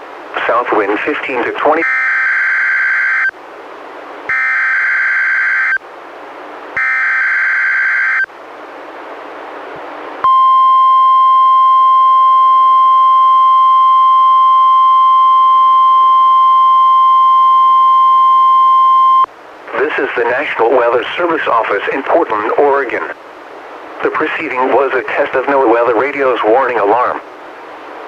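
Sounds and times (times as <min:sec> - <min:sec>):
radio hiss: 0:00.3 - 0:01.8, 0:19.6 - 0:23.2, 0:23.8 - 0:27.4
steady warning alarm tone: 0:01.6 - 0:03.3, 0:04.3 - 0:05.8, 0:06.8 - 0:08.3.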